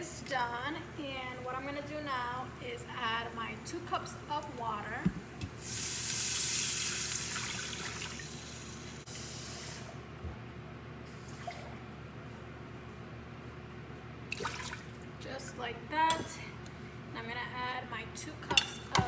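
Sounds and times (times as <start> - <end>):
water poured into hot pot hissing: 5.6 - 9.9.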